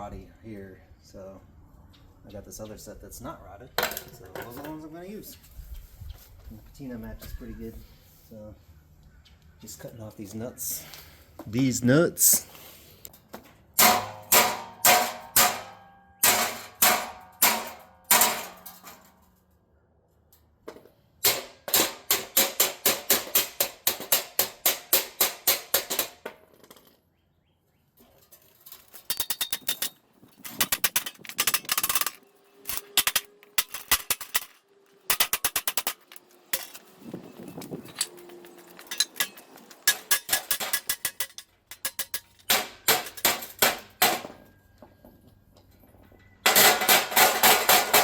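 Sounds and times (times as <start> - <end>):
sharp metal impacts on steel: 13.7 - 19.3, 21.2 - 26.3, 29.0 - 36.9, 38.1 - 44.5, 46.4 - 48.0.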